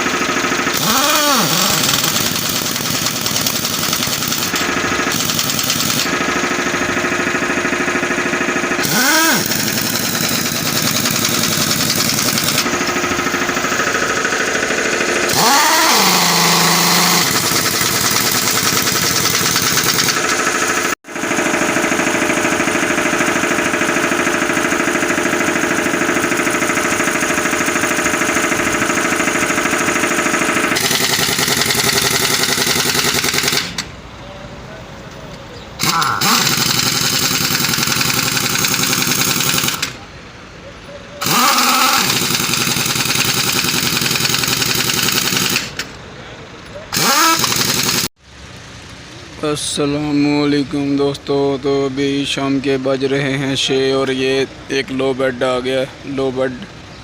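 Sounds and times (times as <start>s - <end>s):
truck engine running and revving: 0.0s - 33.9s, 41.2s - 49.3s.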